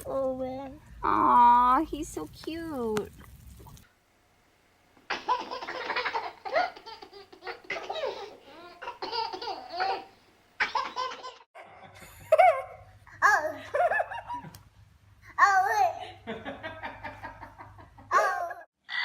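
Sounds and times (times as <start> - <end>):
baby laughing: 5.1 - 11.5.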